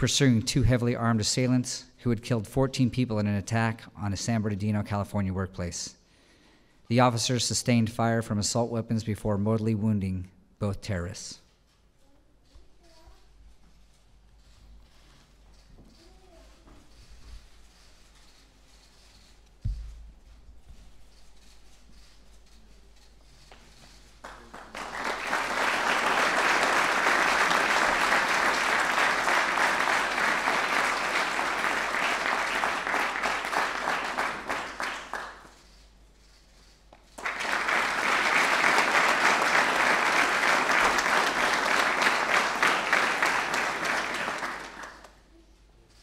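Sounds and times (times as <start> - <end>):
audience applauding: 24.2 - 35.6, 37.2 - 45.2.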